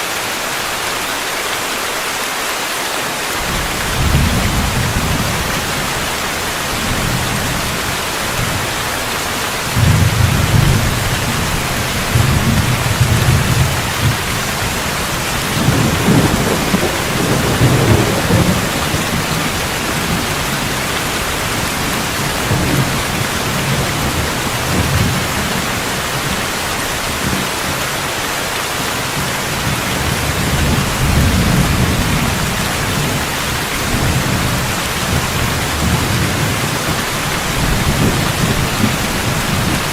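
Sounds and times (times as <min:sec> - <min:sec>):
heavy rain hissing: 0:00.0 - 0:39.9
thunder rumbling: 0:03.4 - 0:27.8, 0:29.1 - 0:39.9.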